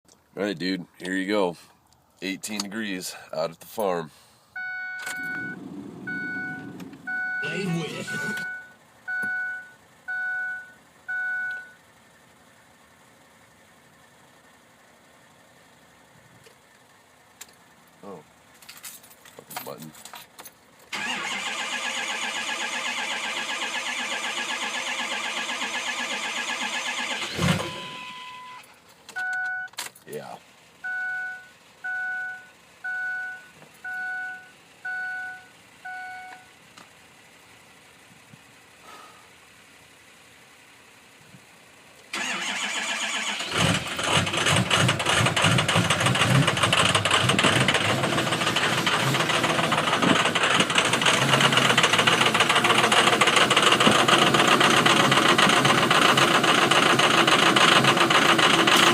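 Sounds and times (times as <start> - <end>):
dashboard warning chime beeps: 4.6 - 11.8, 27.6 - 29.8, 30.8 - 36.5.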